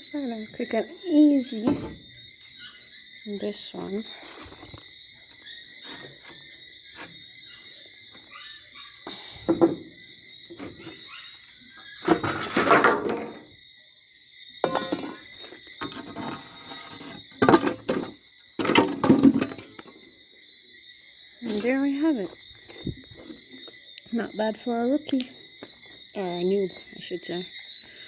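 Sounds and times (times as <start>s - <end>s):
knocks and thunks on window casing: 9.4s - 10.9s
window casing scraping on concrete: 11.9s - 13.5s, 14.6s - 19.9s.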